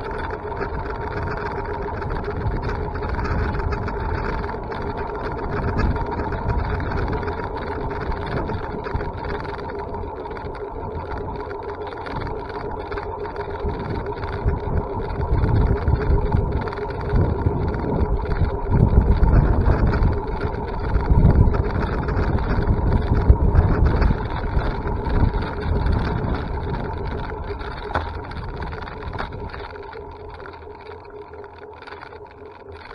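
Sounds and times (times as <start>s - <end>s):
wind buffeting microphone: 0.0s - 9.6s, 13.6s - 29.8s.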